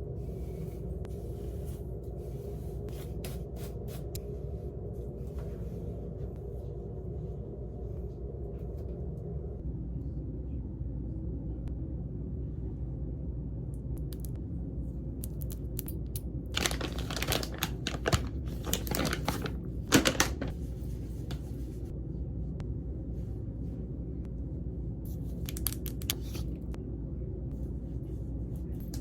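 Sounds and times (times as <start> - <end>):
steady low rumble: 0.0 - 29.0
paper or plastic crinkling: 16.6 - 20.6.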